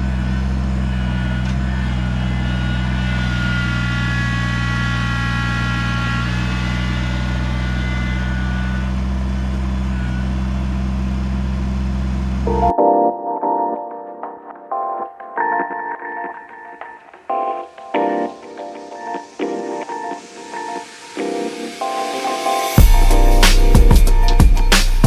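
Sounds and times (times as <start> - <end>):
tractor diesel engine running: 0.0 - 12.7
high whine: 0.0 - 14.4, 15.6 - 25.0.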